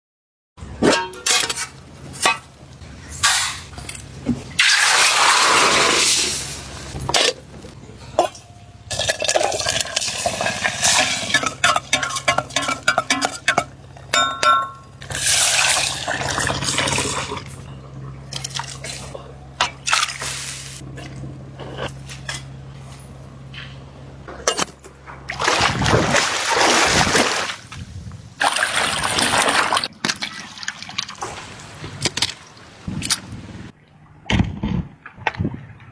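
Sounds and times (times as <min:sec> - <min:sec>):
dishes and utensils clattering: 0:07.0 - 0:15.0.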